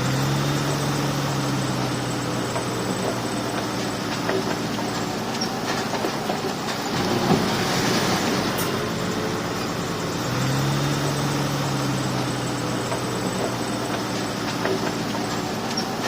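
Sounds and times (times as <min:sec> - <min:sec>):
bulldozer diesel engine: 0:00.0 - 0:16.0
steel tracks clanking: 0:01.7 - 0:10.1, 0:12.1 - 0:16.0.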